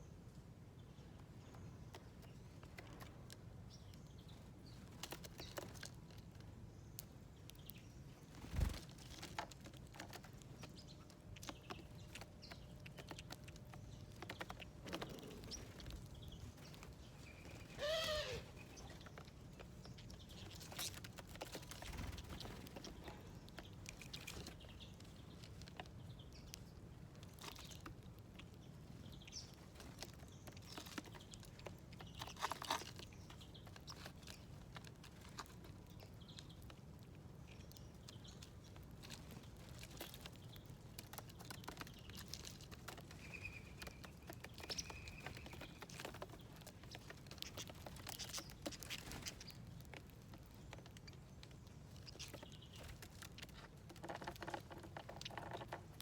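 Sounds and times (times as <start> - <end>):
birds pecking and scrabbling: 0.0 - 56.0
harsh bird call: 17.8 - 18.6.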